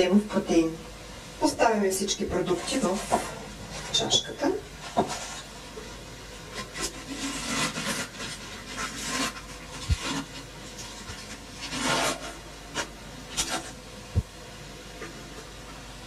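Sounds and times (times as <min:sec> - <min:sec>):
rustling and scraping ingredients: 0:01.4 - 0:13.9.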